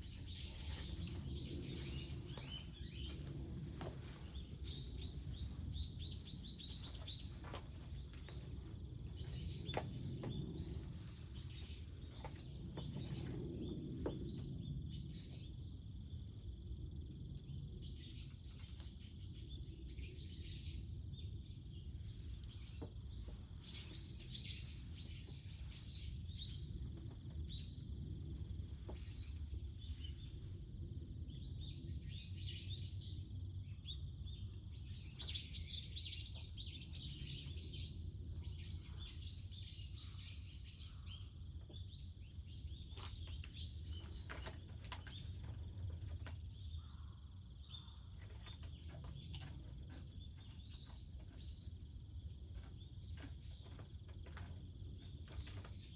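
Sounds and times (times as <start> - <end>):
steady low rumble: 0.0 - 18.5, 19.3 - 35.2
small birds chirping: 0.0 - 55.9.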